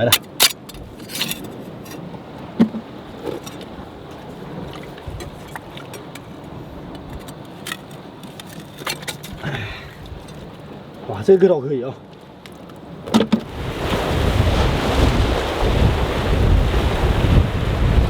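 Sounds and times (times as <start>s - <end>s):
sharp clicks and knocks: 0.0s - 2.0s
surf on rocky shore: 0.0s - 11.5s, 12.1s - 18.0s
wind: 0.0s - 18.0s.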